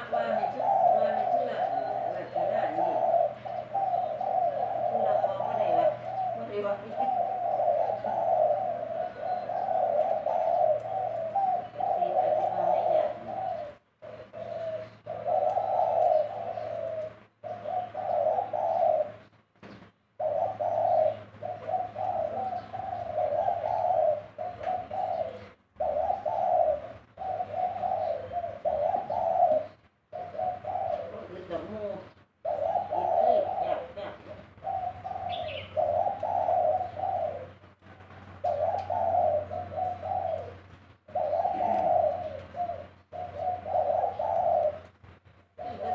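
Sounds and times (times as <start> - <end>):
dove cooing: 0.0 - 45.9.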